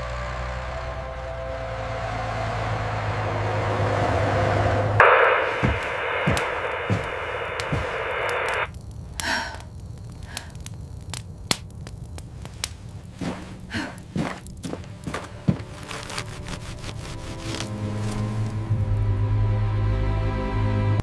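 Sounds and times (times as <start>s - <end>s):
dull thumps: 5.0s - 8.7s
steady hiss: 5.0s - 18.6s.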